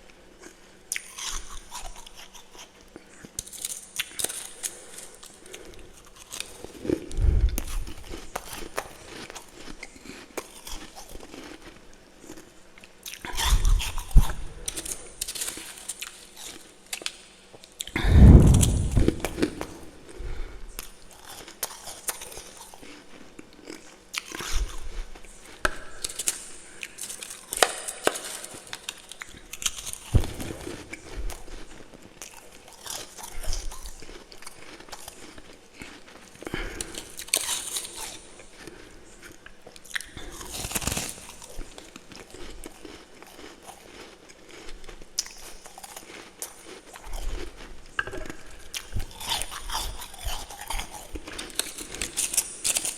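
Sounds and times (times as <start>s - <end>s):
crunching and chewing ice: 0.0s - 52.9s.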